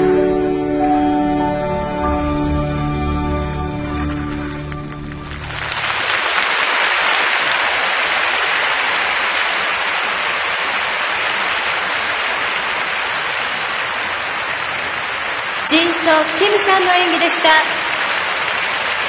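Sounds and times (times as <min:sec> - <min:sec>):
crowd applauding: 0:04.4 - 0:19.0.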